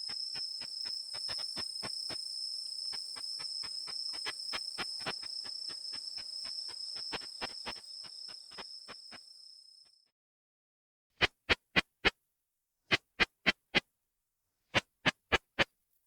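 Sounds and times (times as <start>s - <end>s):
katydid song through bat detector: 0.0s - 9.7s.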